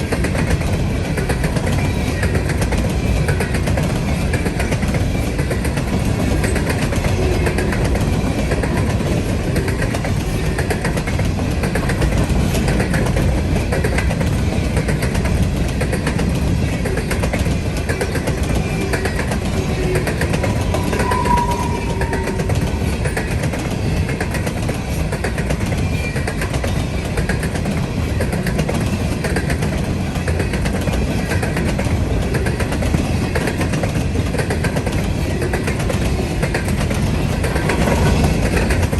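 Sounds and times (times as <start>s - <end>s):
train rumble: 0.0s - 38.9s
train wheels clicking over rail joints: 0.0s - 38.9s
brief high tone: 20.6s - 23.1s.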